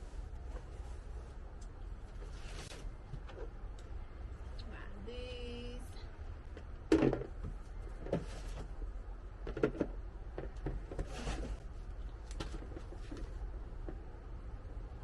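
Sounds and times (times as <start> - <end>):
low steady hum: 0.0 - 15.0
plastic parts knocking: 6.9 - 8.3, 9.4 - 11.1.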